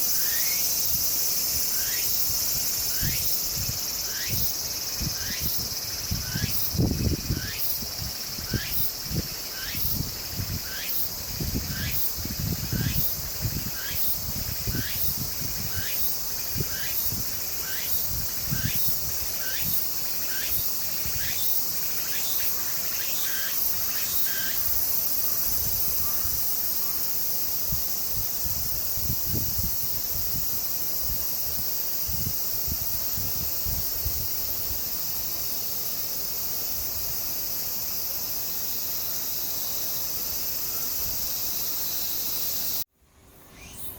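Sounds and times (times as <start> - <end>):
insects chorus: 0.0 - 43.9
wind on microphone: 2.2 - 19.8, 27.7 - 34.9.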